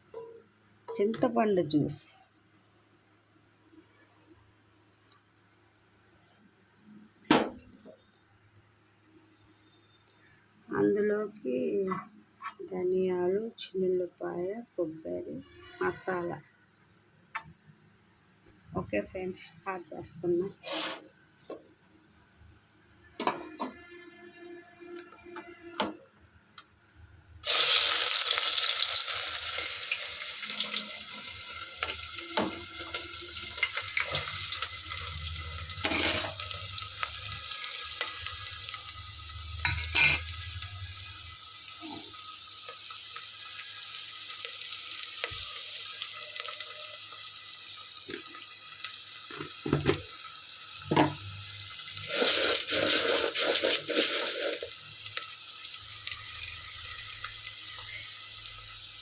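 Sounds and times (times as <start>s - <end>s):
food sizzling in hot oil: 27.4s - 59.0s.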